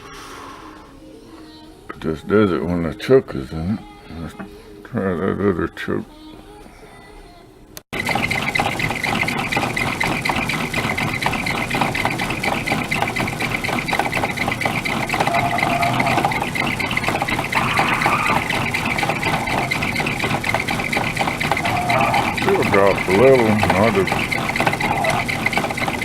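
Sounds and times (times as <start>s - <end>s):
metal lathe clattering and whining: 8.0s - 26.0s.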